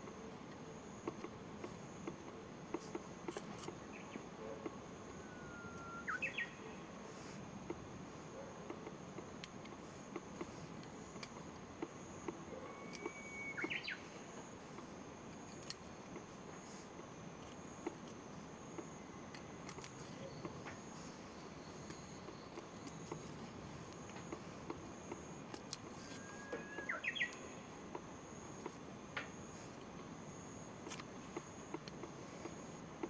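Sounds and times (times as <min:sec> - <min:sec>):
bird singing whistled notes: 0:05.2 - 0:06.8, 0:12.6 - 0:14.0, 0:26.1 - 0:27.6.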